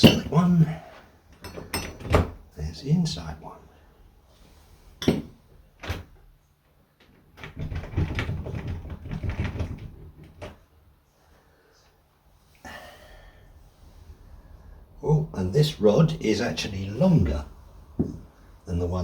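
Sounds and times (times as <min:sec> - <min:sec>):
door handles clunking and rattling: 0:01.5 - 0:02.4, 0:07.3 - 0:10.6.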